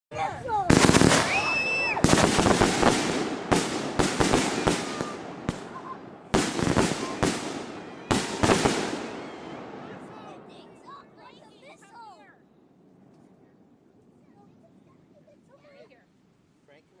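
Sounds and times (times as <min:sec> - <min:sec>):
fireworks bangs: 0:00.3 - 0:11.9
fireworks crackle: 0:00.3 - 0:11.9.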